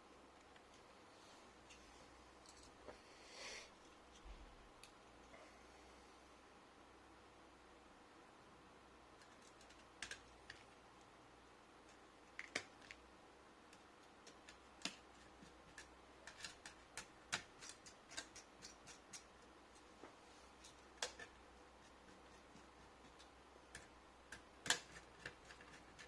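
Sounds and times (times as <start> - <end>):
hand tools tapping laptop chassis: 14.2 - 19.9, 20.6 - 26.0.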